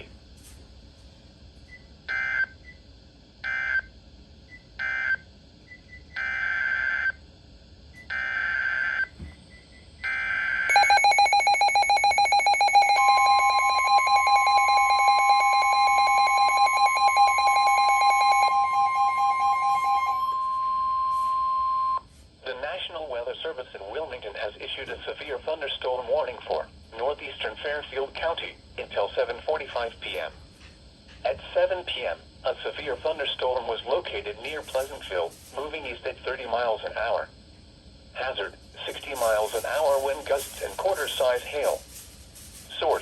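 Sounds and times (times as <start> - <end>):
steady warning alarm tone: 1.6 - 7.3, 7.9 - 22.6, 31.3 - 37.5, 38.1 - 43.0
rapid pulsing alarm beep: 3.5 - 7.2, 8.0 - 22.1, 38.9 - 43.0
buzzy data bursts: 38.1 - 43.0.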